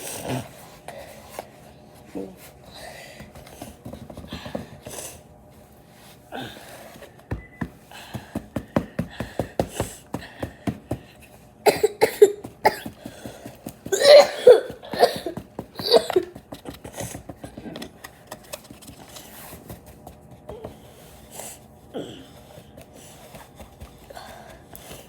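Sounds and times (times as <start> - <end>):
child coughing: 11.6 - 13.0, 13.8 - 16.4.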